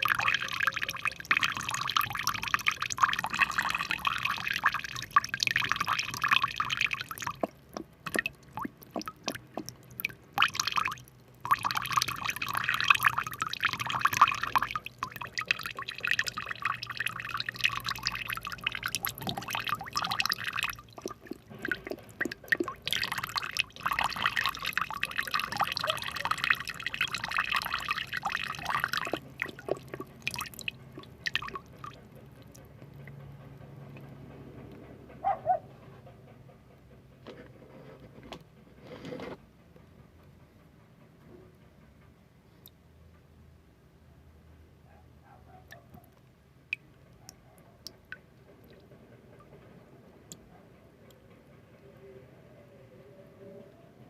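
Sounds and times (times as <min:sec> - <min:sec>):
single water drips: 0:00.0 - 0:33.1
water pouring and dripping: 0:00.0 - 0:34.3, 0:45.7 - 0:50.5.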